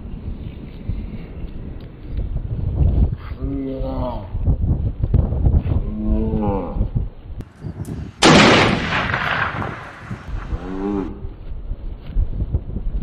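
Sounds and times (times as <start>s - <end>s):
low bending pitched calls: 7.5s - 11.4s
loud blast: 8.2s - 10.7s.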